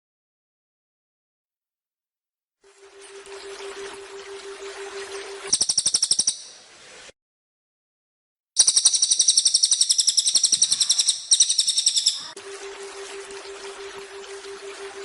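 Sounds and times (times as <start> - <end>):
bird trilling: 5.5 - 6.5, 8.6 - 12.4
rushing waterfall: 6.5 - 7.1, 12.4 - 15.0.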